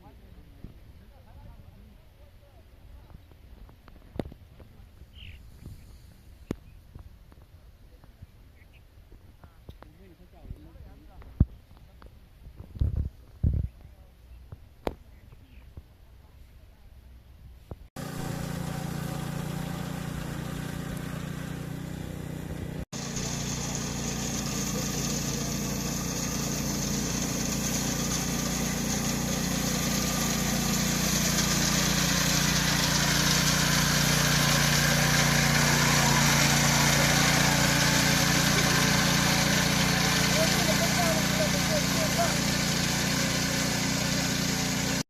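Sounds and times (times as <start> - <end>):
engine running steadily: 18.0 - 45.0.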